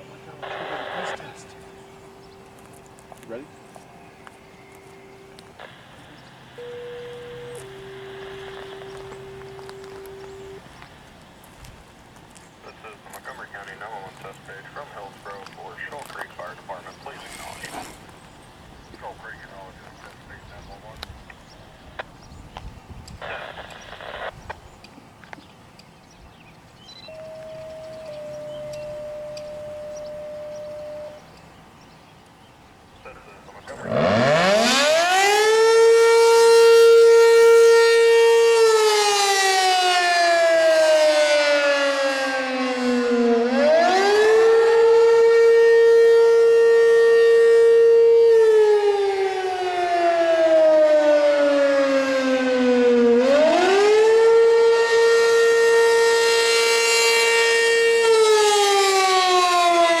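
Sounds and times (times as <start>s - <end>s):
fire siren wailing: 0.0s - 10.7s, 27.0s - 31.3s, 33.6s - 60.0s.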